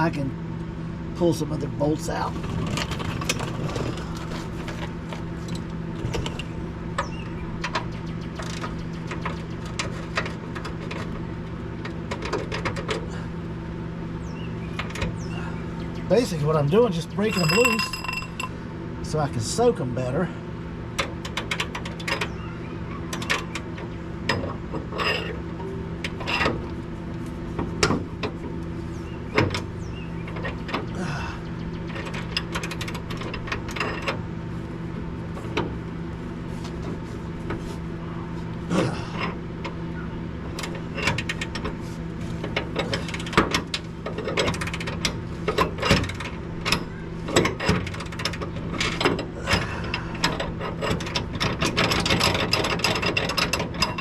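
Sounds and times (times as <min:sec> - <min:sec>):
steady low hum: 0:00.0 - 0:54.0
metal clinks: 0:17.2 - 0:18.6.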